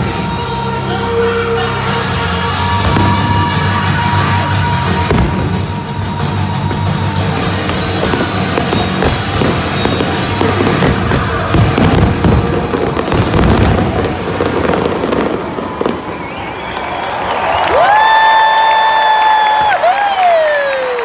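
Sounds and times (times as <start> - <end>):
music over loudspeakers: 0.0 - 13.8
fireworks bursts and crackling: 0.0 - 21.0.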